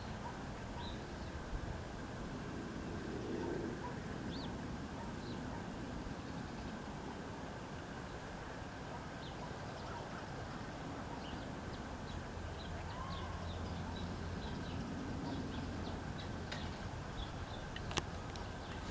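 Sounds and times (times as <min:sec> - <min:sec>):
small birds chirping: 0:00.0 - 0:01.4, 0:09.0 - 0:18.9
background noise: 0:00.0 - 0:18.9
low steady hum: 0:00.0 - 0:18.9.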